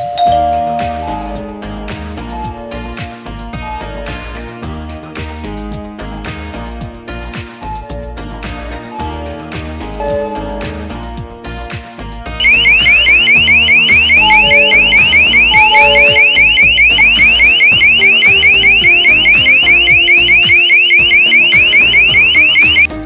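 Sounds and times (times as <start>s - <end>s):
electronic alarm siren sweeps: 12.4s - 22.9s.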